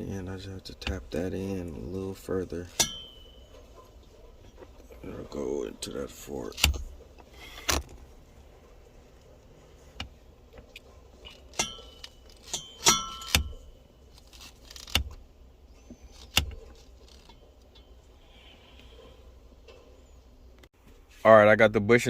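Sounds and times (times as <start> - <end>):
metallic taps on brass bushing: 2.7 - 3.6.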